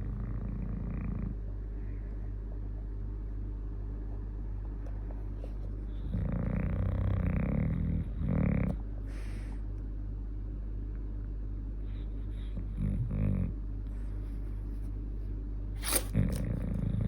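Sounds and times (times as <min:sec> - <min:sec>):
dog snoring: 0:00.0 - 0:01.4, 0:05.0 - 0:09.6, 0:11.9 - 0:14.4, 0:15.8 - 0:17.0
steady low hum: 0:00.0 - 0:17.0.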